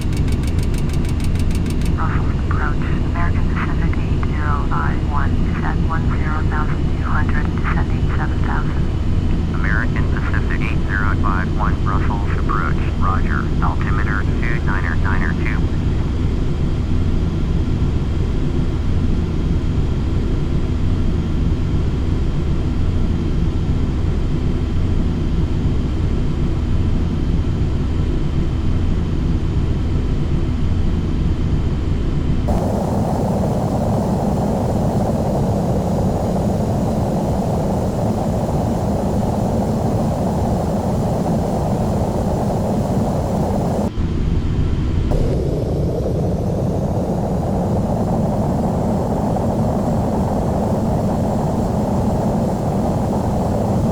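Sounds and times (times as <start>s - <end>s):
faint steady tones: 0.0s - 16.0s, 32.5s - 43.9s, 45.1s - 53.9s
jet engine and airflow in cabin: 0.0s - 53.9s.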